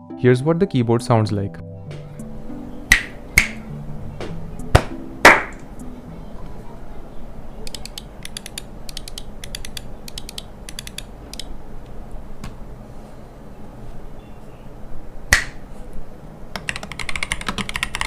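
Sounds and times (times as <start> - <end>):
background music: 0.0 - 6.4
keyboard typing clatter: 7.7 - 11.5, 16.6 - 18.0.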